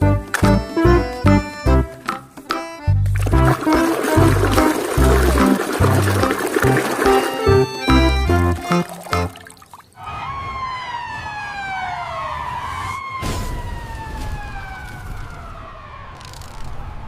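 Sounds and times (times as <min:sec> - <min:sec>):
background music: 0:00.0 - 0:09.4
siren-like falling tone: 0:10.0 - 0:17.0.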